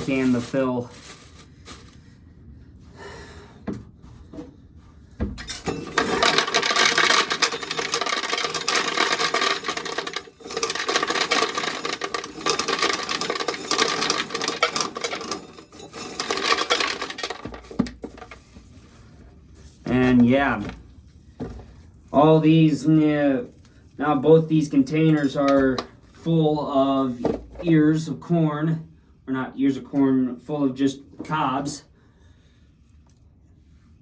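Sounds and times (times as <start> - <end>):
corn sheller rattling grind: 0.0 - 2.0, 5.4 - 19.0.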